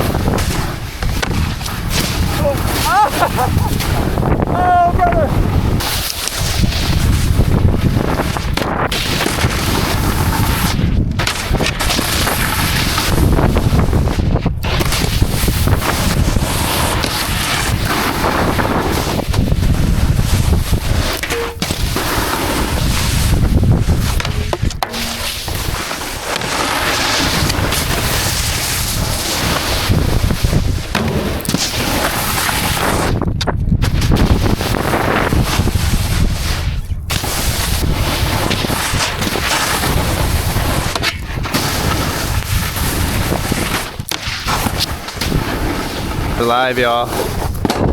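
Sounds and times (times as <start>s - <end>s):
wind rushing over microphone: 0.0s - 47.9s.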